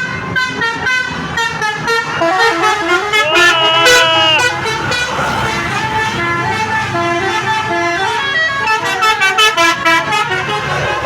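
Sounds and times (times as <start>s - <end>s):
musical air horn melody: 0.4s - 5.2s.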